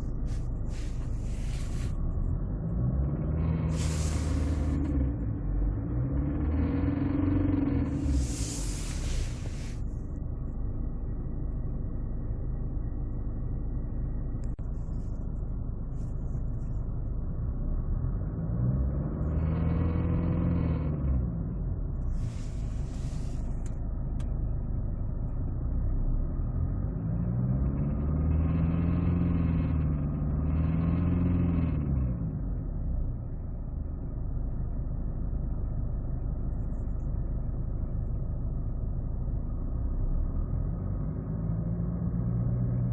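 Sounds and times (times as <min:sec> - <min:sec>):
diesel engine idling and revving: 0:00.0 - 0:42.9
short hiss: 0:03.8 - 0:04.7, 0:08.1 - 0:09.8.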